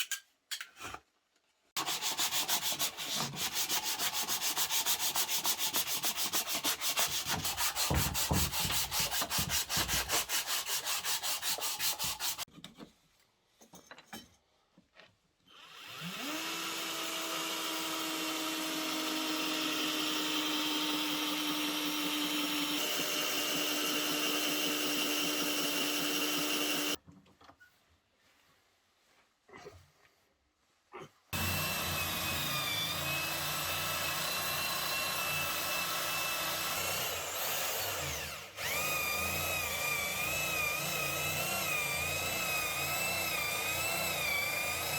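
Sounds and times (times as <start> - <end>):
sandpaper rubbing on wood: 1.8 - 12.5
power tool whining: 15.6 - 27.0, 31.4 - 44.9.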